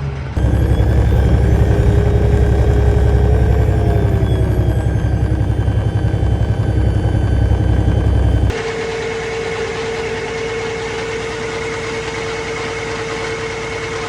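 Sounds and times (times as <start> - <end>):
faint wavering whistle: 0.4 - 8.5
diesel truck engine running: 0.4 - 8.6.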